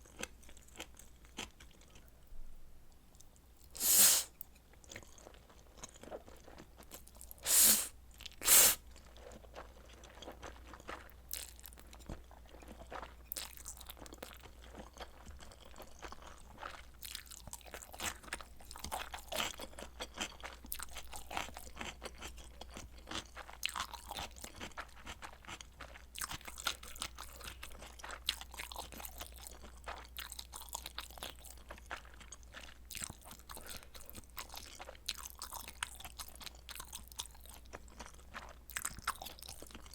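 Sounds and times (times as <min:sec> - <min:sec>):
person chewing: 0:00.0 - 0:02.1, 0:03.2 - 0:39.9
loud short bursts: 0:03.8 - 0:04.3, 0:07.4 - 0:08.8.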